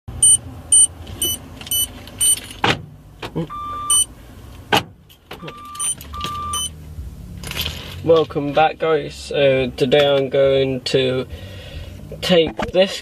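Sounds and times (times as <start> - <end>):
short high electronic beeps: 0.2 - 2.4, 3.5 - 4.1.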